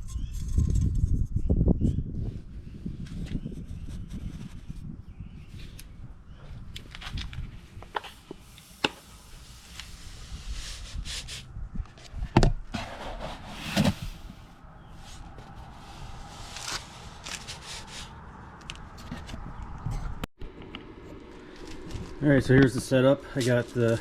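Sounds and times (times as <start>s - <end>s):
scraping and rubbing handling noises: 6.4s - 19.4s.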